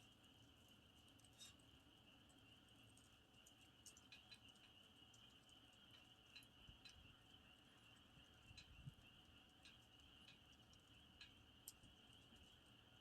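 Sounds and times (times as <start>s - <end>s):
campfire wood crackling: 2.3s - 13.0s.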